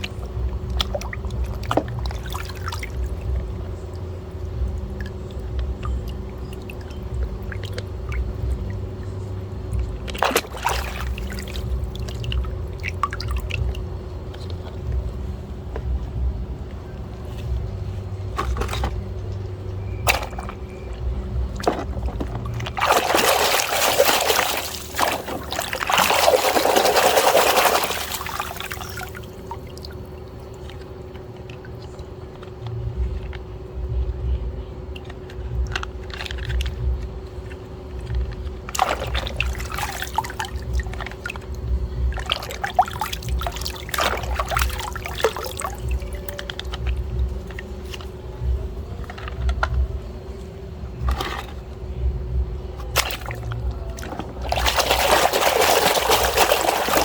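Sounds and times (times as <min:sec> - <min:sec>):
faint steady hum: 0:00.0 - 0:57.0
water pouring over toys: 0:22.8 - 0:29.3, 0:54.1 - 0:57.0.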